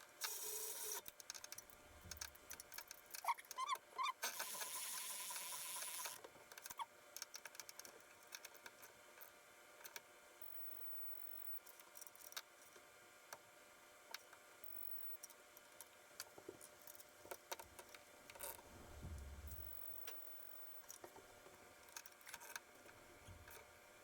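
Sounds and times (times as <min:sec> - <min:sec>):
low rumble: 0:18.8 - 0:19.7.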